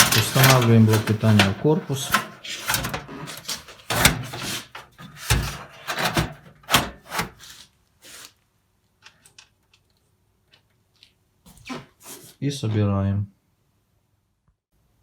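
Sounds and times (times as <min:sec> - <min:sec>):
knocks and scraping: 0:00.0 - 0:07.6.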